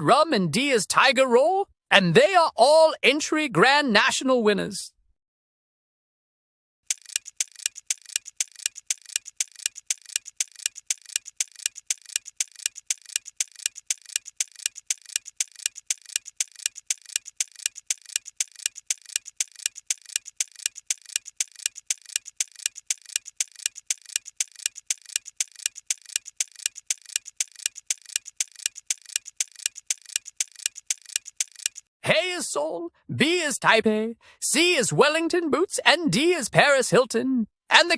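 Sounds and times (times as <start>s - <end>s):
clock ticking: 6.9s - 31.9s.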